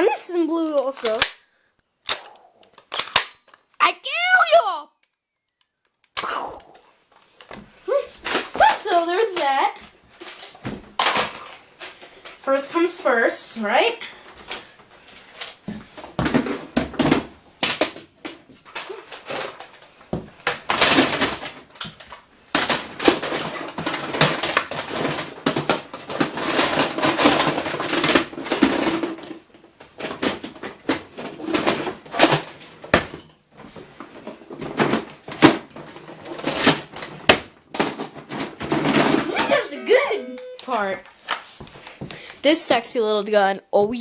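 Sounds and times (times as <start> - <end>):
plastic parts clattering and clicking: 0.6 - 1.4, 2.0 - 3.8, 10.2 - 12.4, 16.3 - 33.4, 34.0 - 39.3.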